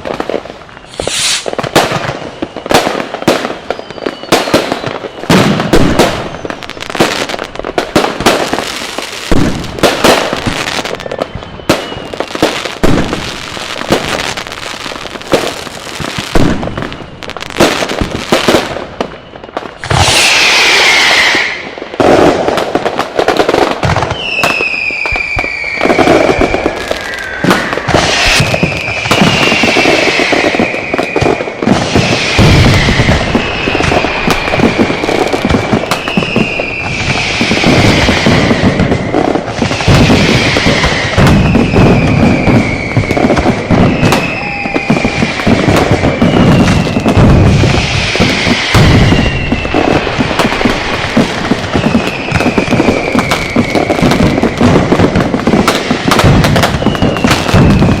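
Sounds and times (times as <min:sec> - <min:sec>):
firecrackers banging: 0:00.0 - 0:58.0
whistling fireworks: 0:00.0 - 0:58.0
loud hiss with falling tone: 0:00.8 - 0:01.6, 0:19.8 - 0:21.8, 0:26.2 - 0:30.9, 0:31.8 - 0:43.1, 0:43.9 - 0:54.0.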